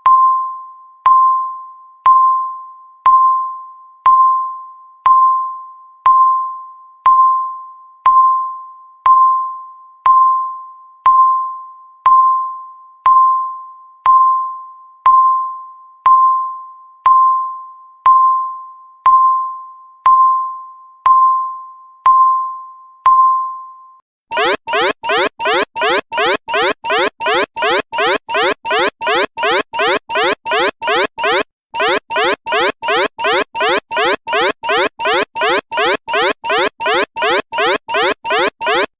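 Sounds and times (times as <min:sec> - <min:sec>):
timer ding: 0:24.3 - 0:38.9.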